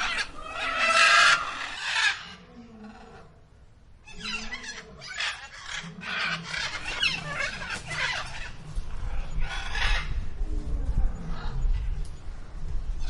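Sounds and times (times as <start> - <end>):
fowl squawking and clucking: 0.0 - 2.4, 4.1 - 8.6
low rumble: 8.4 - 13.0.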